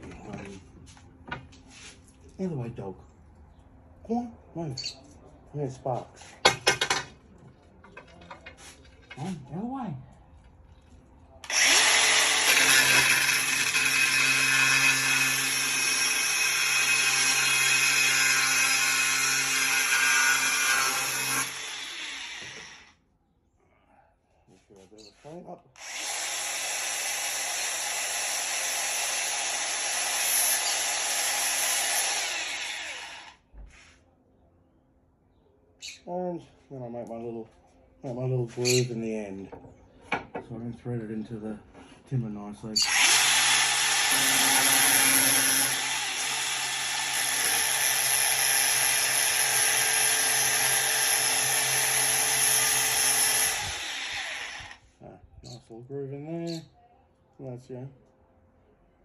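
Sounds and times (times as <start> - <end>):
angle grinder cutting steel: 11.5 - 22.9, 25.8 - 33.4, 42.8 - 54.8.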